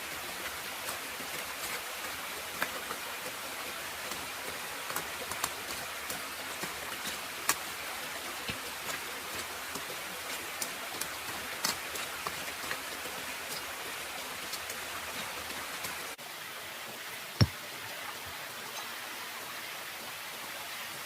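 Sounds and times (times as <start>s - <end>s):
raindrops ticking: 0.0s - 16.2s
steady rain hiss: 0.0s - 21.0s.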